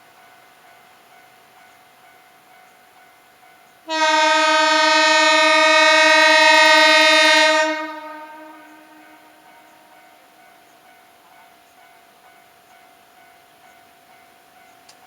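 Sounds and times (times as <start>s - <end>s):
train horn long blast: 3.9s - 10.1s.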